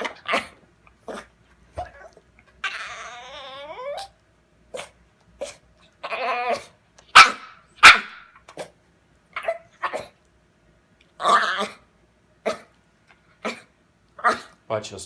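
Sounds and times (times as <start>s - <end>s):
dog sharp outbursts: 0.0s - 1.3s, 6.5s - 8.7s, 11.2s - 12.7s, 13.4s - 14.6s
dog grumbling whine: 0.0s - 4.1s, 4.7s - 6.8s, 11.2s - 11.8s.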